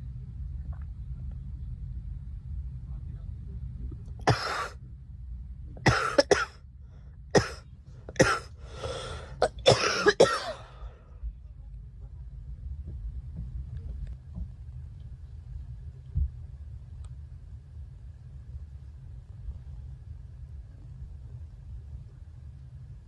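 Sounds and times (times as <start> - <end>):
girl coughing: 4.3 - 4.8, 5.8 - 6.5, 7.4 - 8.5, 9.4 - 10.7.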